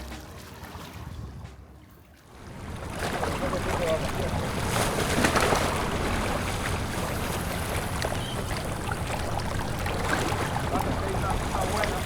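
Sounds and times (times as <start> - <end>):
small waves lapping: 0.0 - 12.0
water bubbling and splashing: 0.5 - 12.0
steady low rumble: 2.4 - 12.0.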